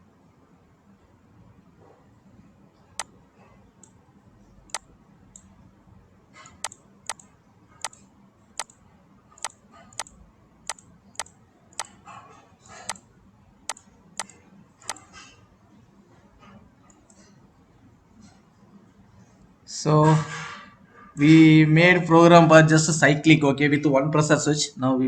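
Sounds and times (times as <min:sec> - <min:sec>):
mouse clicks: 0:06.4 - 0:08.0, 0:08.6 - 0:08.8, 0:09.4 - 0:10.1, 0:10.7 - 0:11.9, 0:13.7 - 0:14.3, 0:14.9 - 0:15.1.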